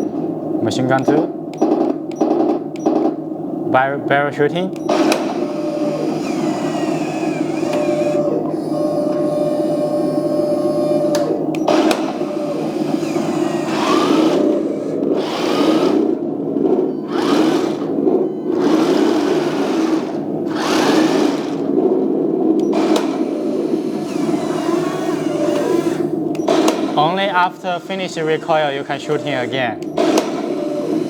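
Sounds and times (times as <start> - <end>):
recoil mechanism whirring: 0.0 - 3.2, 4.7 - 31.0
toy gun firing effect: 26.4 - 27.4, 29.1 - 31.0.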